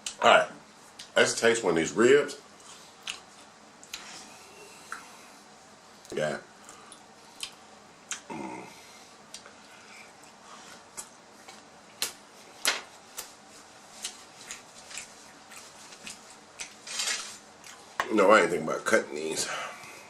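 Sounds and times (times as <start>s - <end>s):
wet chewing mouth clicks: 6.9s - 8.3s.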